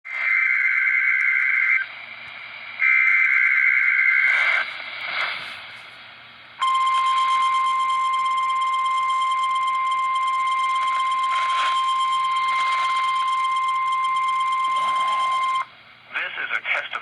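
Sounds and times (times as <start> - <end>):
steady single-pitch alarm tone: 0.3 - 1.8, 2.8 - 4.7, 6.6 - 15.7
radio static: 2.8 - 6.0, 10.6 - 17.0.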